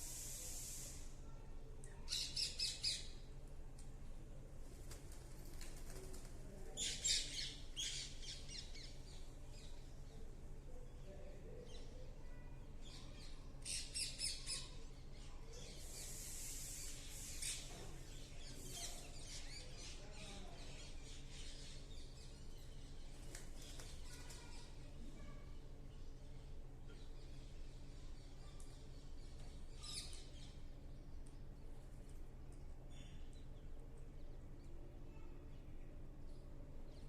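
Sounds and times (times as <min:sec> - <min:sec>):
faint chirps: 0:06.8 - 0:31.8.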